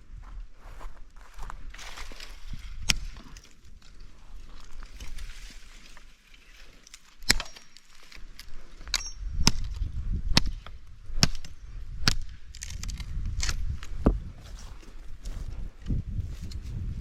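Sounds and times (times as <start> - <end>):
axe chopping firewood: 7.0 - 7.9, 8.8 - 13.6.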